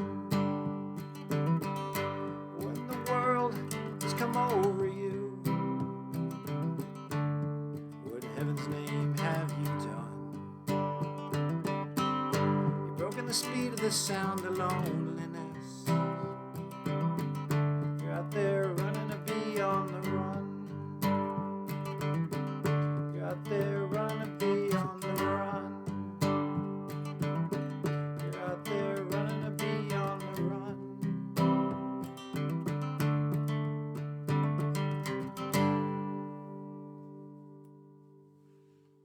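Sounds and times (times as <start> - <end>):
acoustic guitar strumming: 0.0 - 39.0.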